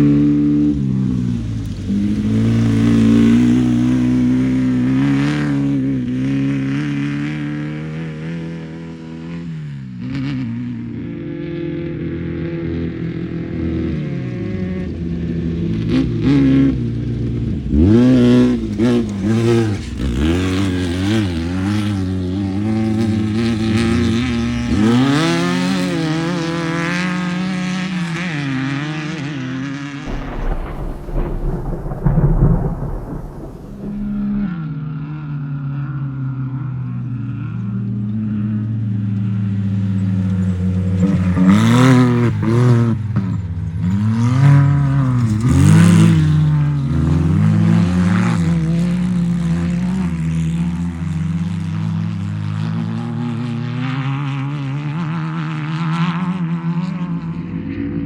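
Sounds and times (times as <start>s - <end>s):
deep rumble: 30.1s - 34.7s.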